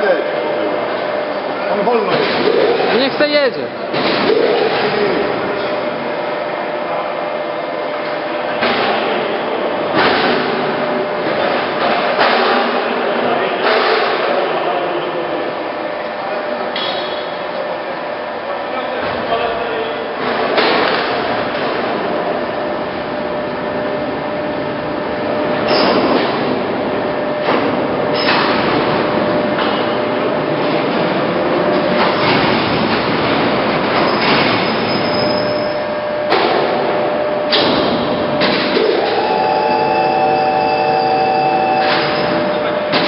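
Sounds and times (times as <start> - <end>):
lathe running: 35.5 - 42.9.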